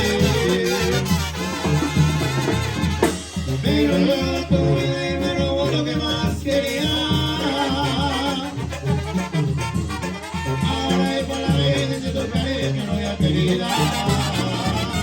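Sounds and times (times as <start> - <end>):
person singing: 0.0 - 1.2, 3.7 - 8.6, 10.7 - 15.0
brass and wind melody: 0.0 - 15.0
tuba bass: 0.0 - 15.0.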